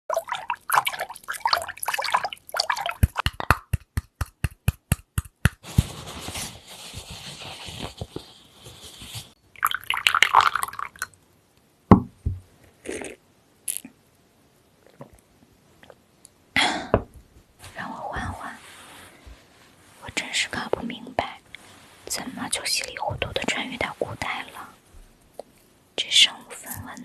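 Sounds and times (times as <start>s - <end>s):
running water: 0.1s - 3.5s
water splashing and dripping: 0.1s - 3.7s.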